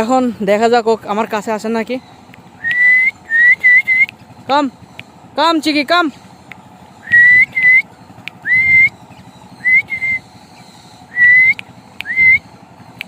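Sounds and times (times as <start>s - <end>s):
person whistling: 2.6s - 4.1s, 7.0s - 7.8s, 8.4s - 8.9s, 9.6s - 10.2s, 11.1s - 12.4s.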